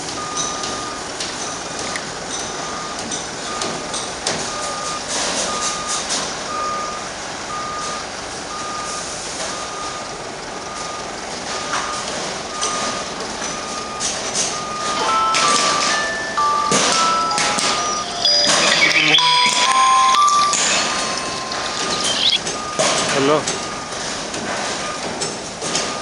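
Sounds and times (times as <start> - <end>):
reversing alarm beeping: 0.0 - 26.0
site machinery clatter: 11.2 - 26.0.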